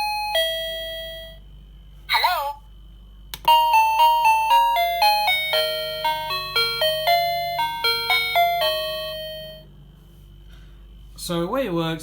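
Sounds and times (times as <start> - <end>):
doorbell chime beeping melody: 0.0 - 1.4, 3.5 - 9.7.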